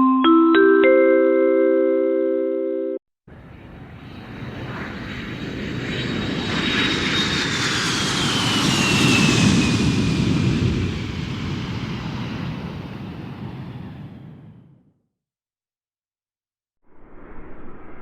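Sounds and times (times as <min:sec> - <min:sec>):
jet airliner passing by: 0:03.3 - 0:14.8.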